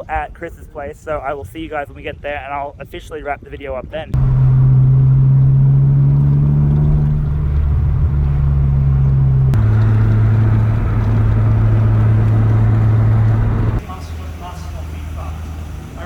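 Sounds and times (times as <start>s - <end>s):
car engine droning: 4.2s - 16.0s.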